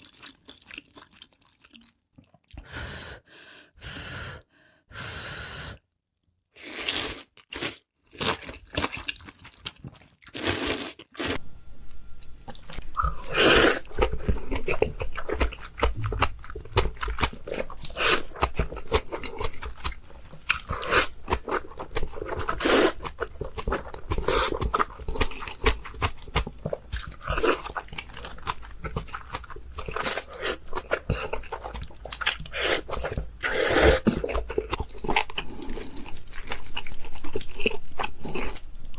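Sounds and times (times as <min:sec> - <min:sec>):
crunchy bites and chewing: 0:12.5 - 0:38.9.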